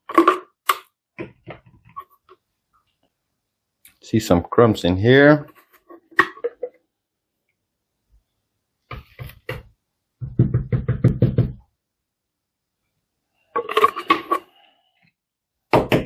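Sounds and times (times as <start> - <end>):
hollow plastic knocks: 8.9 - 11.7.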